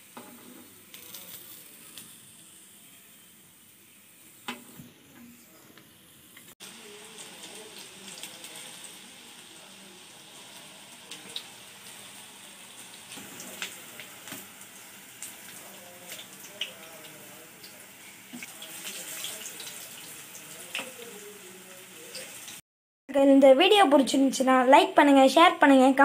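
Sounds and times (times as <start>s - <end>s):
food deep-frying in hot oil: 0.0s - 4.7s, 6.0s - 22.6s.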